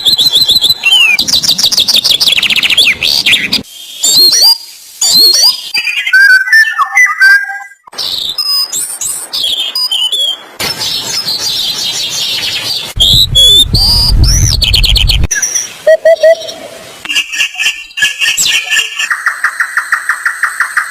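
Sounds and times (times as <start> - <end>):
birds chirping and whistling: 0.0 - 20.9
low rumble: 13.0 - 15.3.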